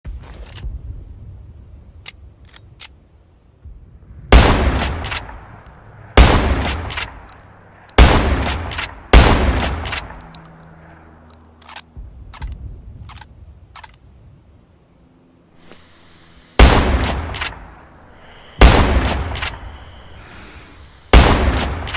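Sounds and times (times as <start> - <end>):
sharp mechanical clicks: 4.7 - 5.7, 6.6 - 14.0, 16.6 - 20.2, 21.1 - 21.9
shotgun shots with echo: 6.2 - 7.2, 16.6 - 17.6, 18.6 - 19.6, 21.1 - 21.9.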